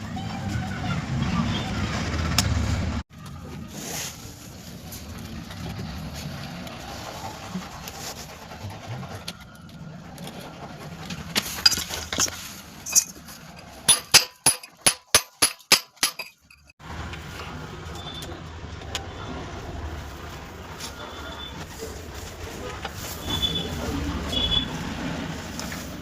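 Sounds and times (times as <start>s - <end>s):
sharp clinks of hard objects: 12.9s - 13.2s, 13.9s - 16.7s.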